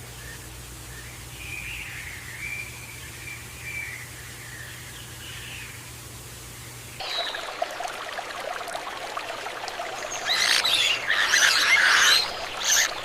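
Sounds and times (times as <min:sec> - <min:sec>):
steady background hiss: 0:00.0 - 0:13.0
birds chirping: 0:07.0 - 0:13.0.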